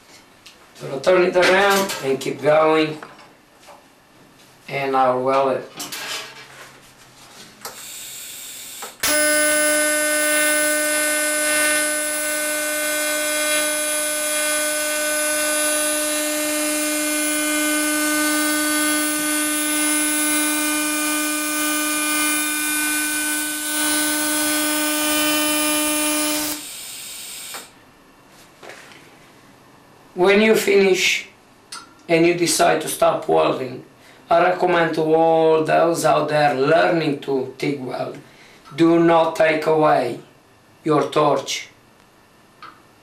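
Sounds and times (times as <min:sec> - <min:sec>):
welding arc buzzing hiss: 0:07.6 - 0:27.8.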